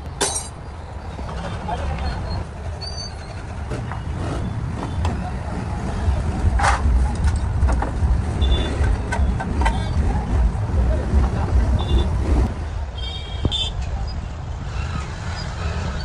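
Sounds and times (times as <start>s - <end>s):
motor vehicles rumbling: 0.0s - 16.0s.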